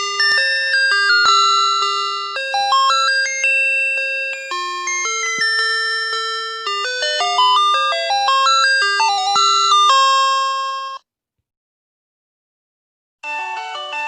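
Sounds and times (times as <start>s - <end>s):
electronic school bell chime: 0.0s - 11.0s.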